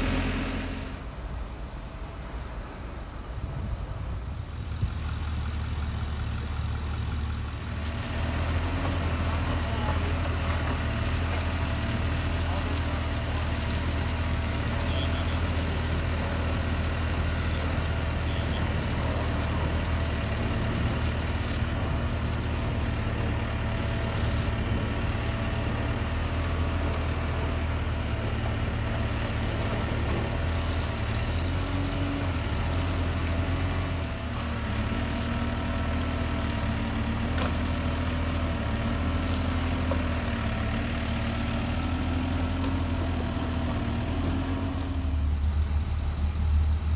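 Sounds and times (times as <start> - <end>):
fire truck engine idling: 0.0 - 34.6, 45.1 - 46.9.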